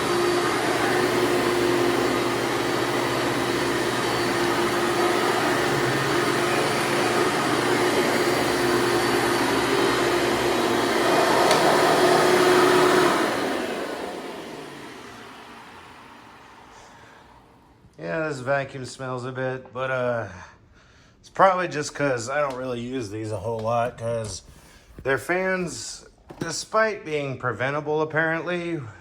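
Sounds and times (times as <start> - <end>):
vacuum cleaner motor whining: 0.0 - 17.5.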